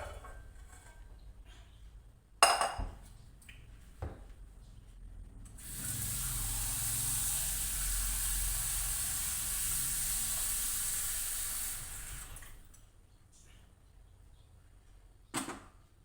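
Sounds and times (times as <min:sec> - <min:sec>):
pot of water heating hiss: 0:05.6 - 0:12.7.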